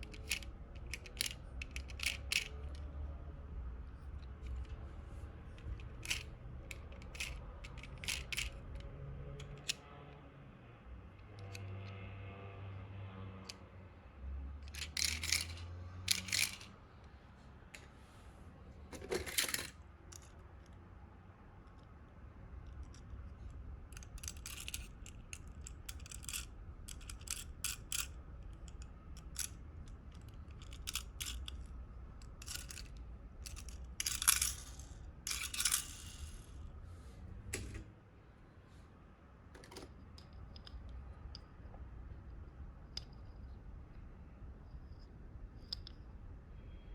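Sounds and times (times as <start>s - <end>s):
toy cars clicking and clinking: 0.0s - 9.8s, 14.6s - 16.8s, 18.9s - 20.8s, 22.6s - 36.7s, 39.6s - 41.5s, 45.6s - 46.1s.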